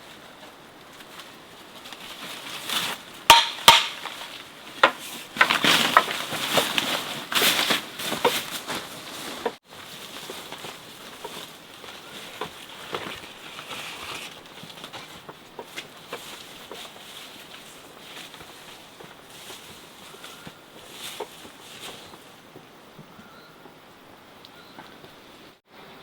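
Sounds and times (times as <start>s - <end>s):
sharp knocks of hard objects: 3.3s - 5.0s.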